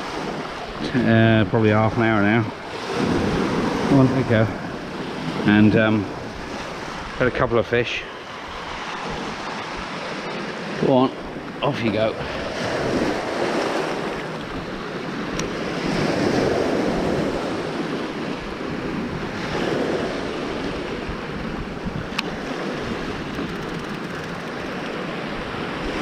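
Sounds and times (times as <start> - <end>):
wind buffeting microphone: 0.0 - 7.3, 12.2 - 26.0
sea waves washing on shore: 0.0 - 26.0
sharp clicks: 23.2 - 25.0.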